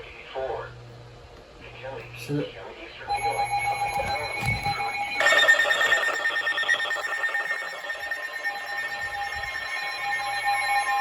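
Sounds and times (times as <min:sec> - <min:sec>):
high electronic whine: 0:03.1 - 0:11.0
warbling digital data tones: 0:03.1 - 0:11.0.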